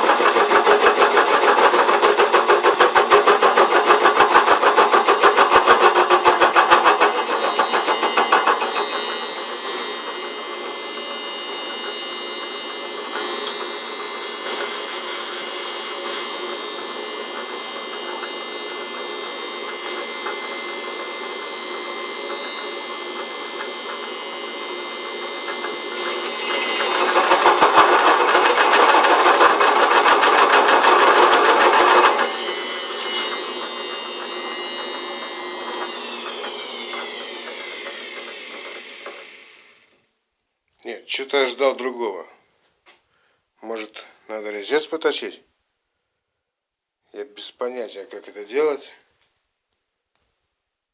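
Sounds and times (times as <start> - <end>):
cutting tool biting metal: 0.0 - 10.4
lathe whining: 0.0 - 40.0.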